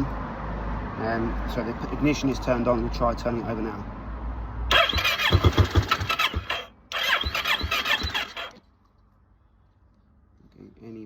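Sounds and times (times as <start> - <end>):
motorcycle starter cranking: 4.7 - 8.6.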